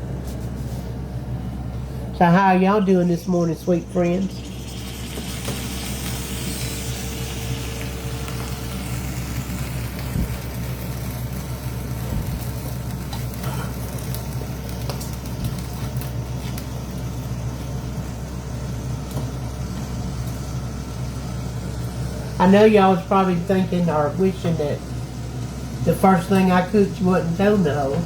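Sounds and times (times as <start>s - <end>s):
low hum: 0.0s - 28.0s
food sizzling in a pan: 4.2s - 22.4s.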